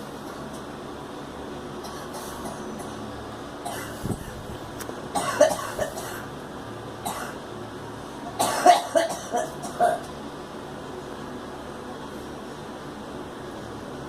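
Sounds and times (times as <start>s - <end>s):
girl coughing: 3.6s - 4.4s, 5.2s - 6.3s, 7.0s - 7.4s, 8.4s - 10.1s.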